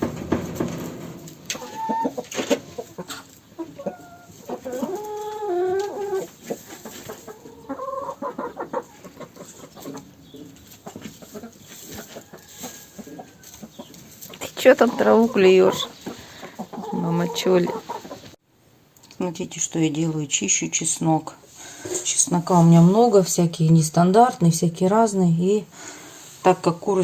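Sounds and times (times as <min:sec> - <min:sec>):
hens clucking and calling: 0:00.0 - 0:18.4.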